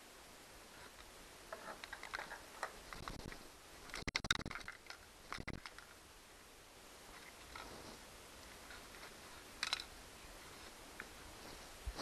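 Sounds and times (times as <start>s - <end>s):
plastic parts clicking: 1.5s - 6.0s, 8.9s - 9.9s.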